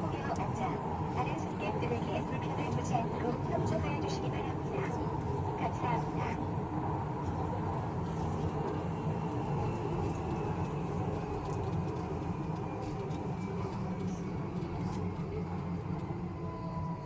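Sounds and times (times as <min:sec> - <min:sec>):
train running low rumble: 0:00.0 - 0:17.0.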